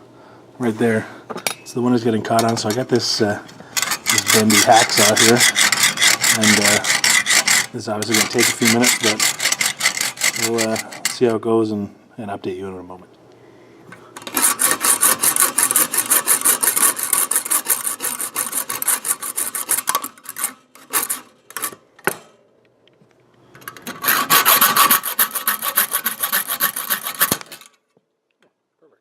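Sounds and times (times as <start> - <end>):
hacksaw cutting metal: 3.8 - 11.4, 14.2 - 21.8, 23.7 - 27.8.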